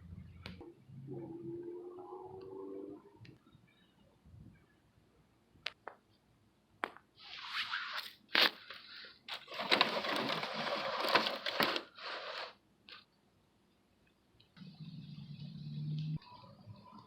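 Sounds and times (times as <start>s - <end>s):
gritty scraping and crunching: 8.4s - 12.6s.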